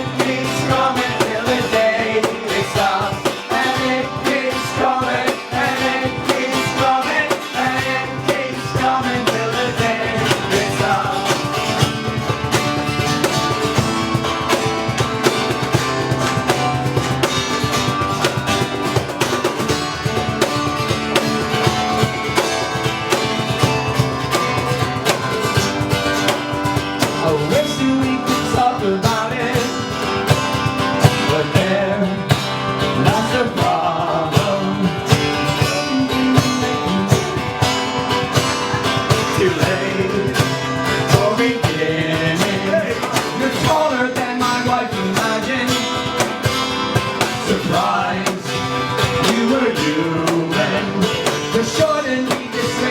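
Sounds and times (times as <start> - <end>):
person singing: 0.0 - 11.9, 27.2 - 30.1, 31.0 - 37.6, 39.1 - 46.3, 47.3 - 52.9
drum beat: 0.0 - 52.9
guitar: 0.0 - 52.9.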